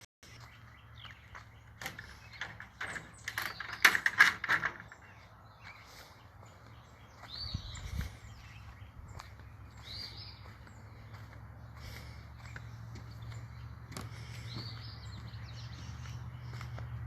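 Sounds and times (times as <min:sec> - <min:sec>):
birds chirping: 0:00.2 - 0:17.0
sharp clicks and knocks: 0:01.8 - 0:05.1.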